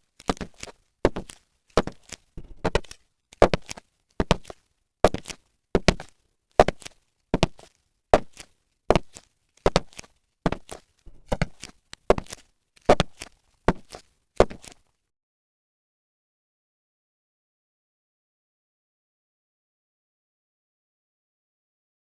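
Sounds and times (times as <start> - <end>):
footsteps walking: 0.0 - 14.9.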